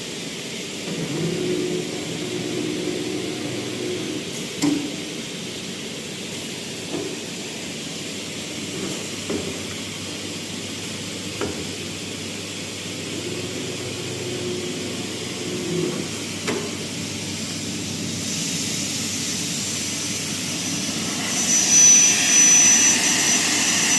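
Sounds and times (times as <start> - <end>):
saw mechanical hiss: 13.2 - 23.9
high-pitched blade whine: 20.2 - 23.9.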